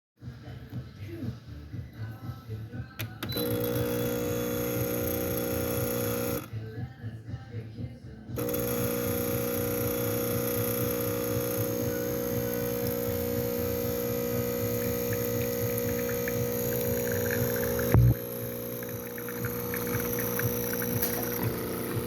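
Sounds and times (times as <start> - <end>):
espresso machine pump humming: 3.4 - 6.5, 8.4 - 22.0.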